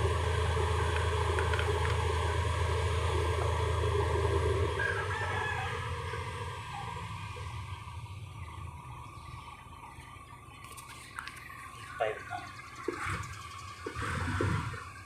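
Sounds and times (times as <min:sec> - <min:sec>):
diesel engine running: 0:00.0 - 0:15.0
rooster crowing: 0:04.5 - 0:07.5.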